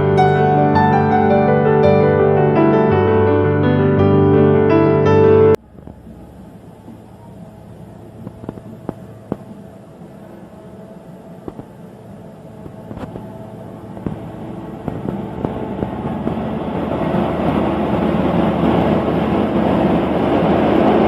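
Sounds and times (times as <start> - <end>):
diesel engine running: 5.6 - 21.0.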